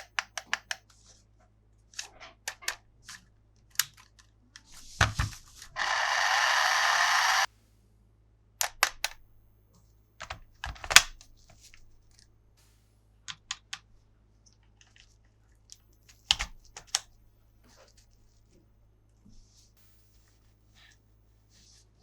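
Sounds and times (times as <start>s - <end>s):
plastic toy parts clicking: 0.0s - 0.8s, 2.0s - 4.4s, 8.6s - 9.2s, 10.2s - 11.2s.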